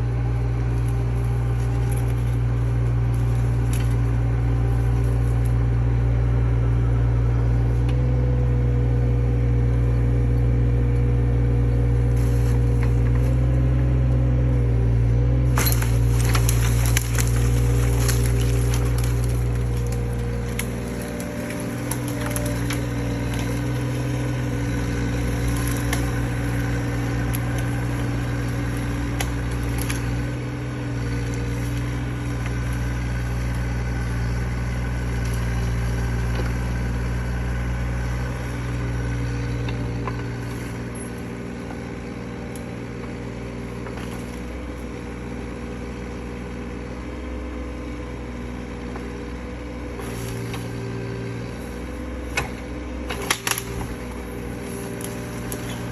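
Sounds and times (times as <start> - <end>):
excavator diesel engine running: 0.0 - 55.9
wood cracking and snapping: 0.7 - 5.6, 15.5 - 44.8, 49.8 - 55.9.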